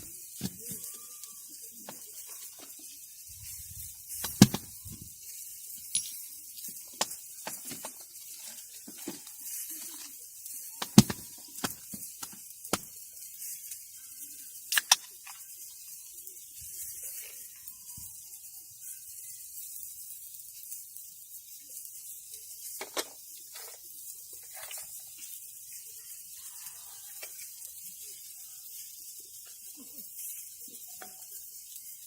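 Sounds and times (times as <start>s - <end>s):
faint steady hiss: 0.0s - 32.0s
utensils and cookware knocking: 10.8s - 12.4s.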